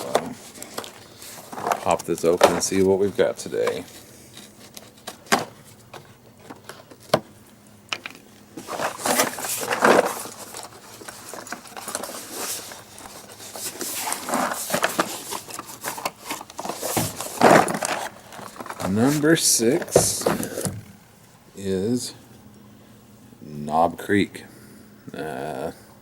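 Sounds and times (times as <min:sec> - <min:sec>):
cardboard rustling and crinkling: 0:00.0 - 0:07.4, 0:08.0 - 0:21.0.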